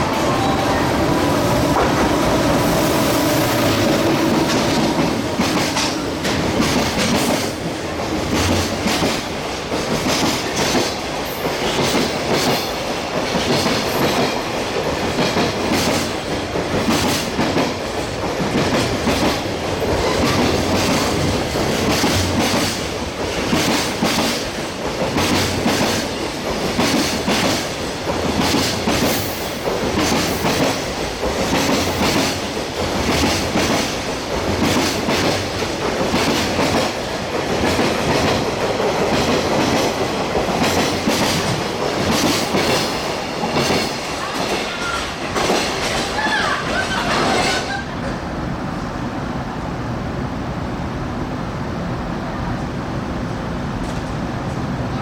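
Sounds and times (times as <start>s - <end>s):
train rumble: 0.0s - 55.0s
train wheels clacking over rail joints: 3.1s - 47.6s.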